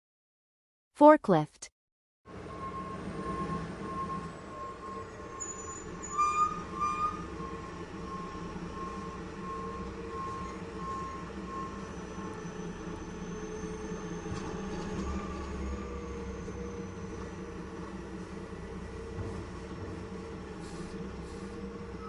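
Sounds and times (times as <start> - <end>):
reversing alarm beeping: 2.3 - 17.8
forklift engine hum: 2.3 - 22.0.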